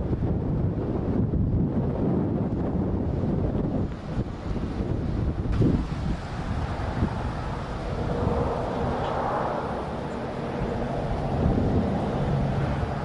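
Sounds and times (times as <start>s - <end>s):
wind buffeting microphone: 0.0s - 13.0s
vehicle engine drone: 5.5s - 13.0s.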